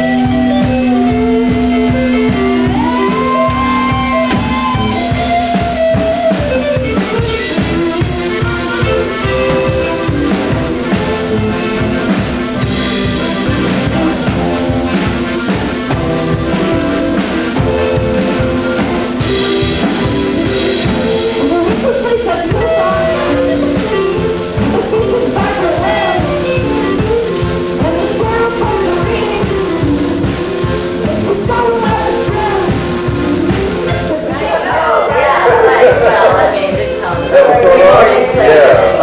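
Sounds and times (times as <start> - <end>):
drum kit steady beat: 0.0 - 39.0
pitched instruments: 0.0 - 39.0
person singing: 20.5 - 30.0.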